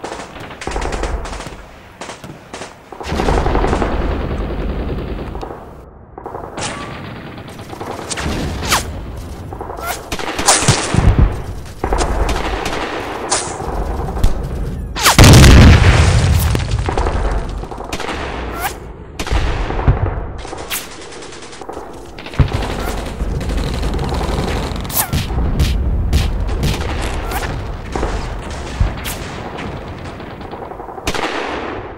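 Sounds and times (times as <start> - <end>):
gunshots: 6.2 - 31.9
explosion: 15.1 - 17.6.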